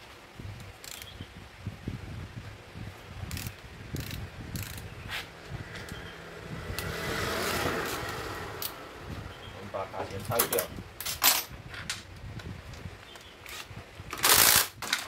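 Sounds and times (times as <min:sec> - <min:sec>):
metallic ratchet clicks: 0:03.3 - 0:04.9.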